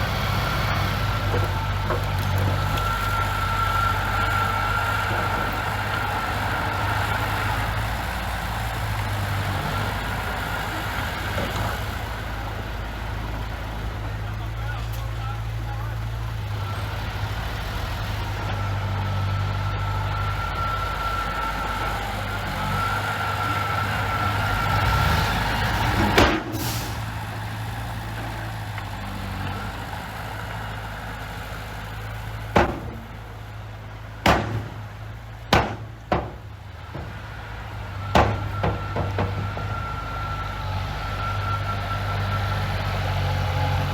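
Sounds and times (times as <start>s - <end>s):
heavy machine engine running: 0.0s - 43.9s
sharp metallic knocks: 32.6s - 33.2s, 34.2s - 34.9s, 35.5s - 37.2s, 38.1s - 39.7s.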